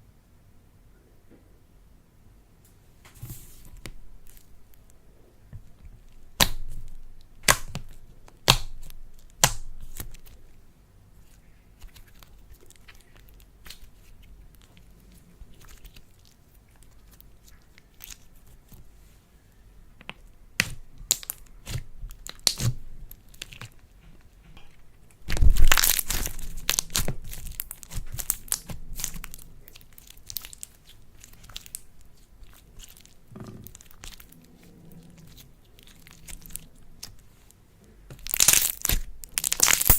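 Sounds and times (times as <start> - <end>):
slime tearing: 20.6 - 23.8, 25.2 - 37.5, 38.1 - 39.9
loud cracks: 38.2 - 39.9.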